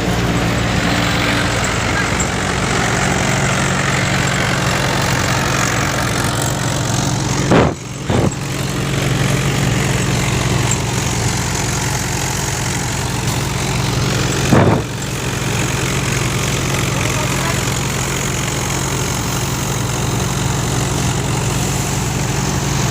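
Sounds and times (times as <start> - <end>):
thresher engine hum: 0.0 - 22.9
loud knocks: 7.4 - 8.5, 14.4 - 15.1.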